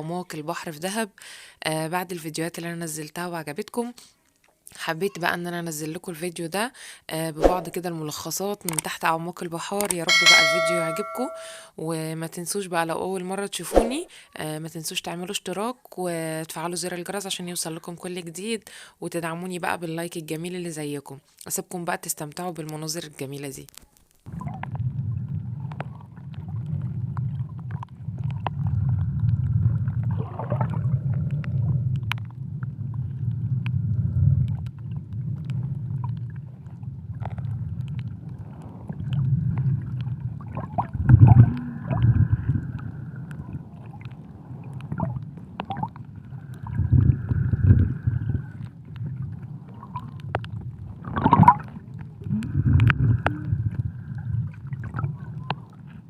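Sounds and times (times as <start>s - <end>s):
gurgling bubble bursts: 24.3s - 55.6s
low underwater rumble: 24.3s - 56.0s.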